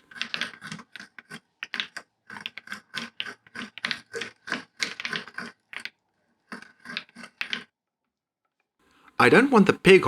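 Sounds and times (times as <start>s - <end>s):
hand tool rasping on wood: 0.0s - 7.7s.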